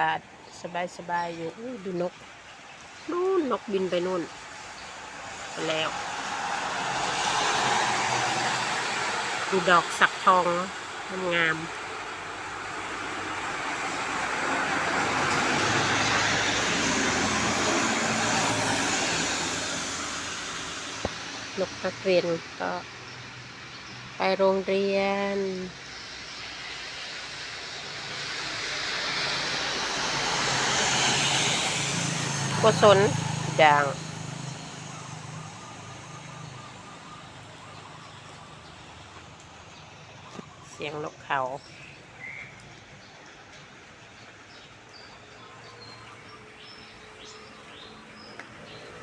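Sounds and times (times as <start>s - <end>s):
tyre hiss on wet road: 4.3s - 9.5s, 11.8s - 21.6s, 25.8s - 36.8s
passing vehicle engine hum: 4.6s - 11.1s, 11.7s - 22.6s, 26.0s - 40.3s
steady outdoor hiss: 22.6s - 49.0s
vehicle engine hum: 27.5s - 41.6s.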